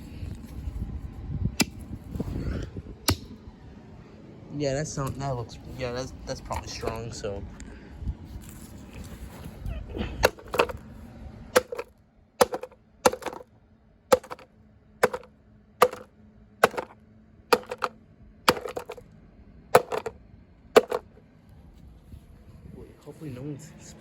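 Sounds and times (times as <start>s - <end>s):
hammer knocking on plastic: 10.2s - 10.8s, 11.6s - 13.4s, 14.1s - 14.4s, 15.0s - 17.9s, 18.5s - 19.0s, 19.8s - 20.1s, 20.8s - 21.0s.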